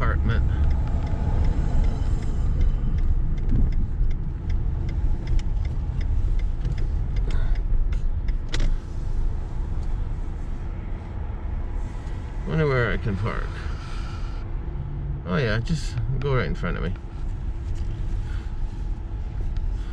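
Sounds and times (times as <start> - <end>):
light ticks: 0.0 - 10.3, 15.8 - 19.9
car engine and tyres rumbling: 0.0 - 19.9.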